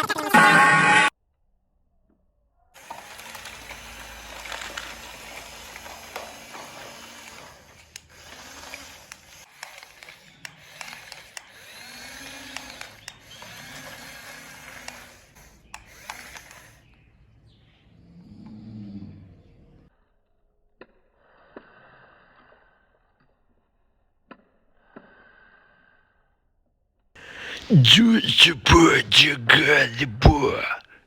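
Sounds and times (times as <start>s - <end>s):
toy excavator motors whirring: 2.8s - 17.0s.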